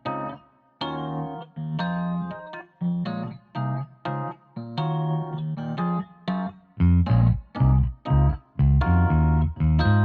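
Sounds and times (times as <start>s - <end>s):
keyboard: 0.0s - 10.0s
plucked guitar notes: 4.8s - 10.0s.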